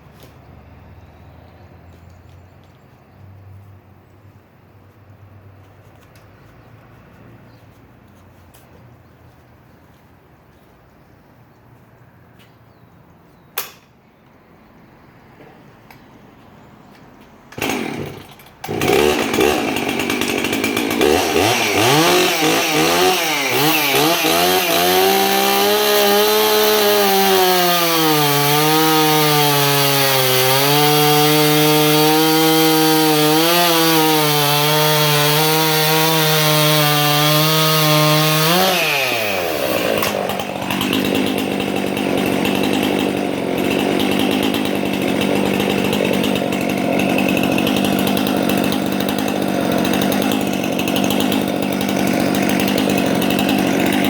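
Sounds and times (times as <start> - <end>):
chainsaw cutting wood: 17.4 - 54.0.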